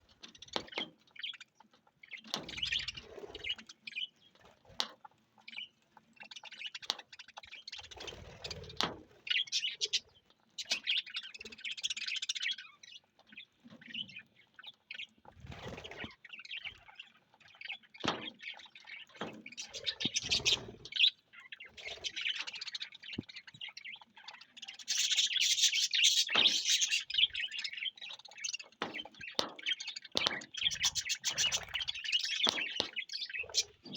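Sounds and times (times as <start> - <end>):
budgerigars chirping and warbling: 0.1 - 33.9
sharp clicks and knocks: 28.8 - 33.9.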